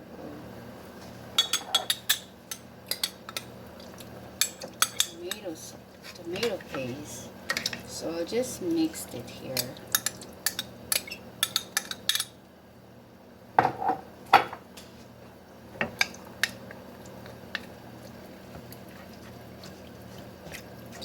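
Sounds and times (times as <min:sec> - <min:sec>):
spoon clinking against container: 0:04.4 - 0:05.4.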